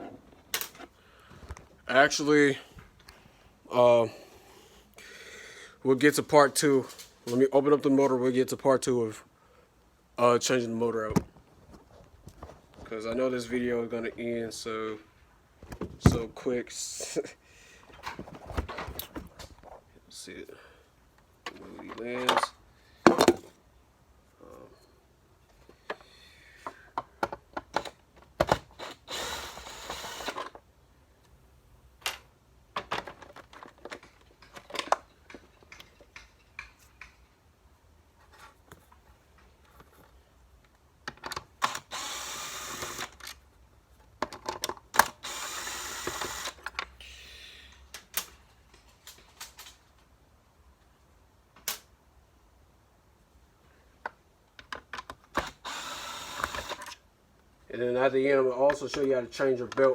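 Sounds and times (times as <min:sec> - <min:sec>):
noisy handling of plastic parts: 0:00.0 - 0:01.8, 0:06.4 - 0:08.2, 0:11.0 - 0:13.6, 0:14.9 - 0:17.2, 0:17.8 - 0:20.0, 0:21.1 - 0:23.6, 0:24.5 - 0:31.4, 0:32.0 - 0:45.4, 0:47.8 - 0:52.0, 0:53.7 - 0:55.7
plastic parts clicking and knocking: 0:25.8 - 0:29.0, 0:32.0 - 0:37.3, 0:38.7 - 0:41.9, 0:44.0 - 0:45.2, 0:54.0 - 0:55.7.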